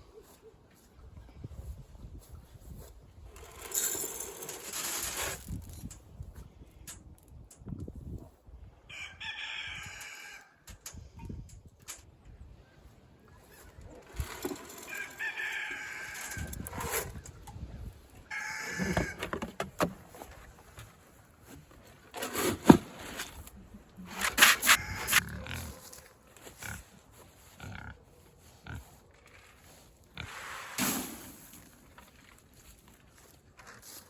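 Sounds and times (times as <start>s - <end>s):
other livestock: 8.0s - 11.6s, 12.3s - 21.7s, 23.4s - 34.0s
chickens calling: 12.6s - 19.4s, 24.4s - 26.6s.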